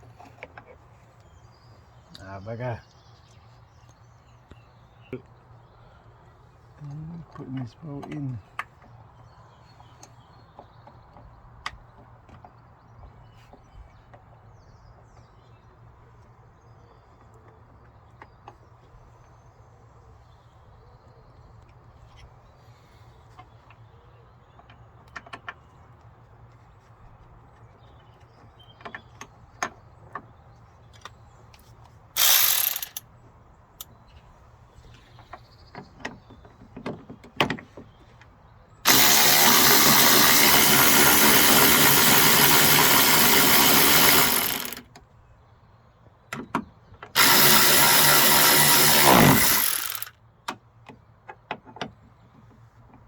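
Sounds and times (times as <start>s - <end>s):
cordless power driver running: 32.2s - 33.0s, 38.9s - 44.8s, 47.2s - 50.1s.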